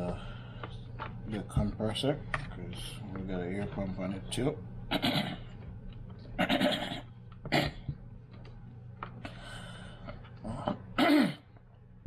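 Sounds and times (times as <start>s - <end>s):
steady low hum: 0.0s - 12.0s
man clearing throat and coughing: 4.9s - 5.5s, 6.4s - 7.9s, 10.6s - 11.5s.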